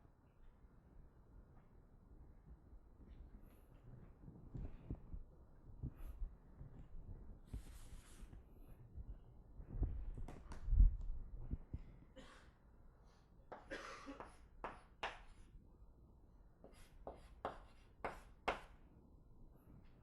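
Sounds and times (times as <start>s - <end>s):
scratchy writing strokes on board: 7.4s - 8.4s, 13.5s - 15.4s, 16.6s - 18.8s.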